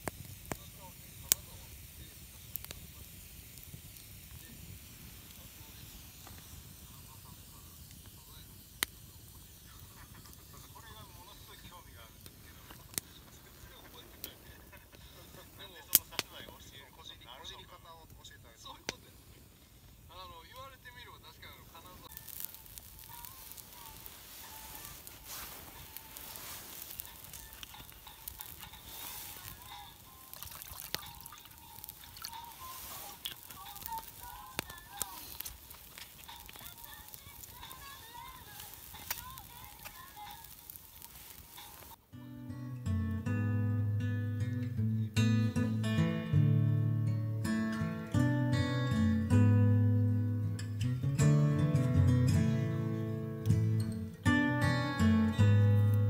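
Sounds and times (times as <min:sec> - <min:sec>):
fire crackling pops: 0:00.0 - 0:56.0
food sizzling: 0:00.0 - 0:56.0
wood fire hissing: 0:00.0 - 0:56.0.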